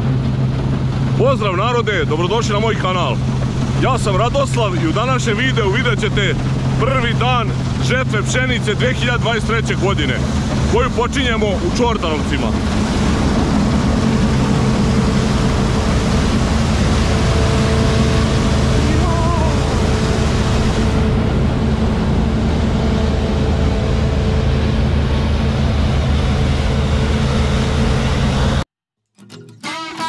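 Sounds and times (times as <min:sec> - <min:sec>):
vehicle engine running: 0:00.0 - 0:28.6
wind and road noise: 0:00.0 - 0:28.6.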